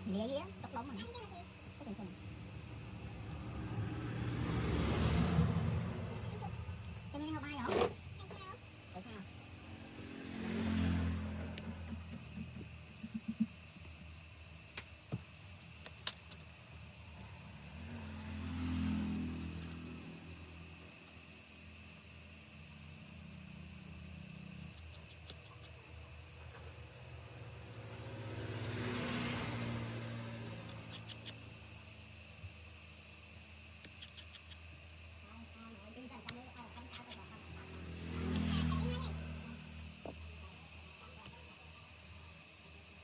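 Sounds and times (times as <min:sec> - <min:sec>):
vehicle passing: 0:00.0 - 0:12.8, 0:16.9 - 0:21.0, 0:26.3 - 0:31.8, 0:36.6 - 0:40.4
faint insect chirps: 0:00.0 - 0:43.0.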